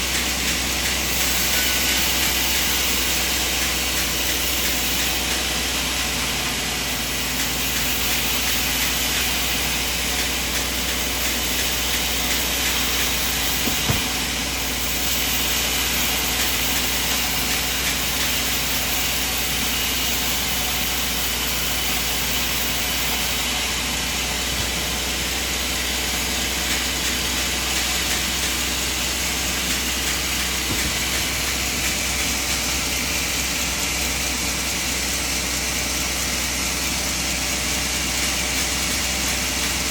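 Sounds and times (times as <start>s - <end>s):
band saw motor drone: 0.0s - 39.9s
short knock: 13.6s - 14.3s.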